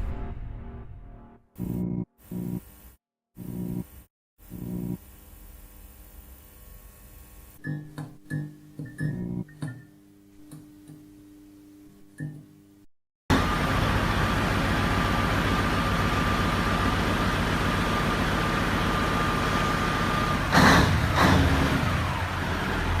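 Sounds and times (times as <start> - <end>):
heavy truck running: 13.3 - 23.0
loud bursts of noise: 20.1 - 23.0.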